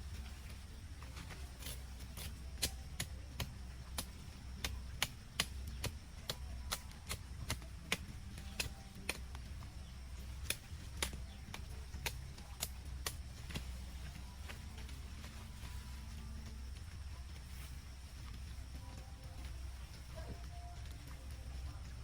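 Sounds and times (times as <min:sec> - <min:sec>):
tool chopping wood: 0:01.2 - 0:15.4.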